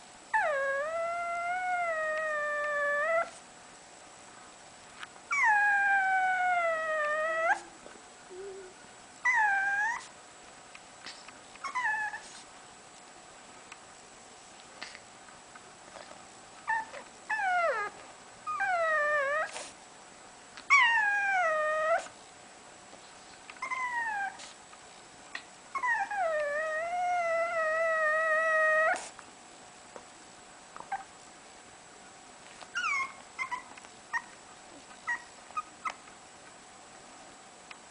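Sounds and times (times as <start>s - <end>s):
dog whining: 0.3s - 3.4s, 5.3s - 10.2s, 11.6s - 12.4s, 16.6s - 19.7s, 20.7s - 22.2s, 23.6s - 24.6s, 25.4s - 29.2s, 32.7s - 36.0s.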